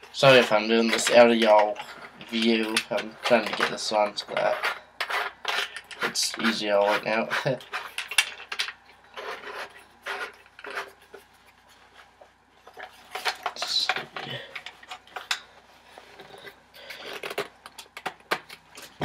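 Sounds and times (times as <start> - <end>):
clicks and knocks of parts: 7.6 - 9.3, 12.6 - 15.5, 16.2 - 19.0.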